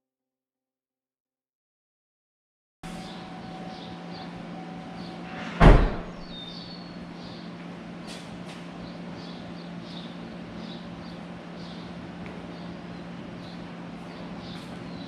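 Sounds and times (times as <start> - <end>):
loud bang: 5.3 - 6.3.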